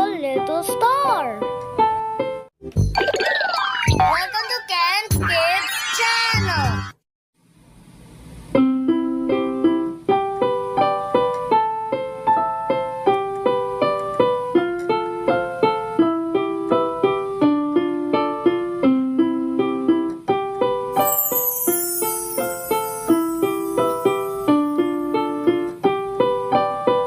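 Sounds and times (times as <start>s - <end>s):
simple piano tune: 8.6s - 27.0s.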